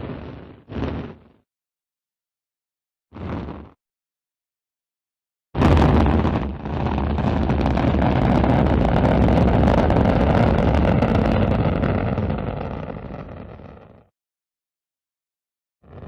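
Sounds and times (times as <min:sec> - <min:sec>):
rocket engine rumble: 0:05.6 - 0:14.0.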